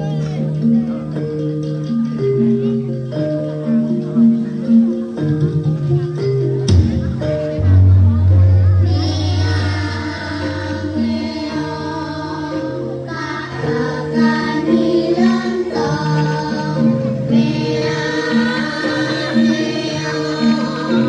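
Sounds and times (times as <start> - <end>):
instrumental backing music: 0.0 - 21.0
singing voices: 6.0 - 21.0.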